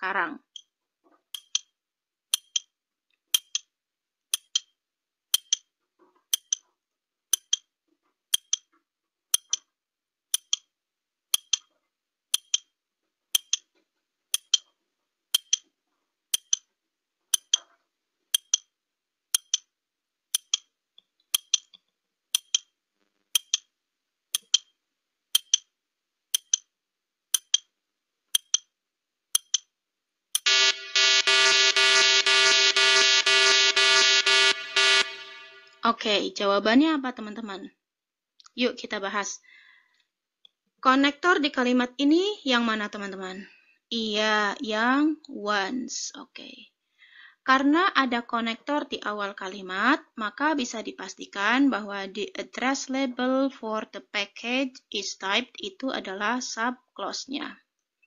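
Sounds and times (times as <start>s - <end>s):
clock ticking: 0.4s - 0.7s, 1.3s - 1.7s, 2.3s - 2.7s, 3.3s - 3.7s, 4.3s - 5.7s, 6.3s - 6.7s, 7.3s - 7.7s, 8.3s - 9.7s, 10.3s - 10.7s, 11.3s - 11.7s, 12.3s - 12.7s, 13.3s - 13.7s, 14.3s - 14.7s, 15.3s - 15.7s, 16.3s - 16.7s, 17.3s - 17.7s, 18.3s - 18.7s, 19.3s - 19.7s, 20.3s - 20.7s, 21.3s - 23.7s, 24.3s - 26.7s, 27.3s - 27.7s, 28.3s - 29.7s, 30.4s - 30.8s
harsh buzzer: 30.4s - 35.8s.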